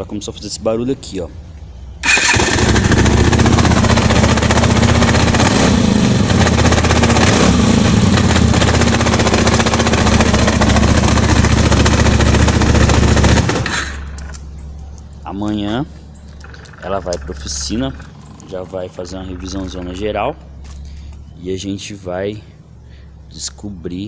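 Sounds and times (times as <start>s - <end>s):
motorcycle engine rattling: 2.0s - 21.1s.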